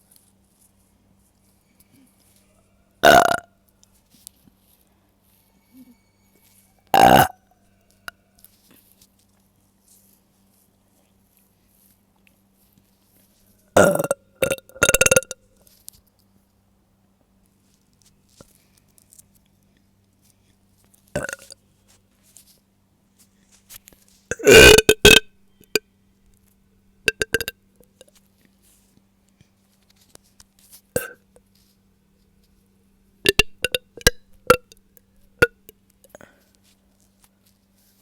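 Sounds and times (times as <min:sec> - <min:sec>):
woman burping: 0:03.0 - 0:03.4, 0:06.9 - 0:07.4, 0:13.8 - 0:15.4, 0:21.2 - 0:21.5, 0:24.3 - 0:25.3, 0:31.0 - 0:31.2.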